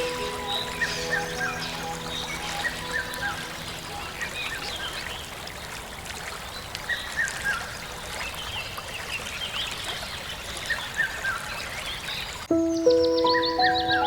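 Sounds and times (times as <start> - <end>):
birds chirping: 0.0 - 5.7, 12.0 - 14.0.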